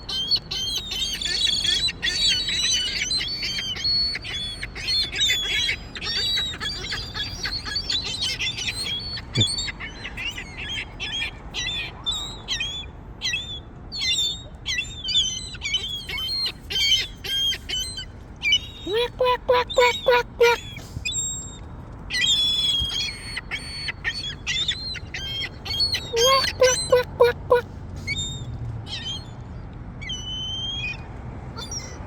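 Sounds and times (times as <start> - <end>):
gulls calling: 0.1 - 12.0, 15.8 - 20.8, 22.3 - 27.6.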